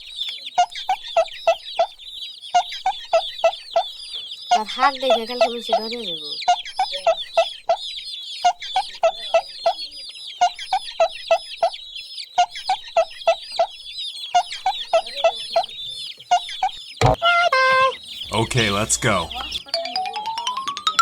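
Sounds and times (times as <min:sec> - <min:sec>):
chicken clucks: 0:00.0 - 0:20.4
chicks peeping: 0:00.0 - 0:20.8
descending held tones: 0:17.0 - 0:21.0.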